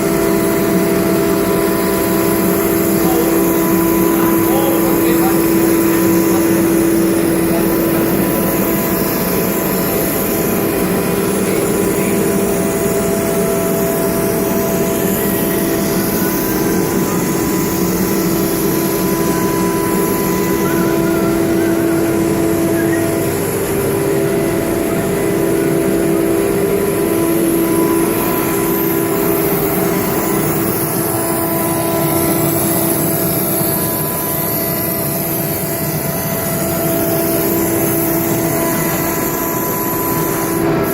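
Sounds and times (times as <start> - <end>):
router machine whine: 0.0 - 40.9.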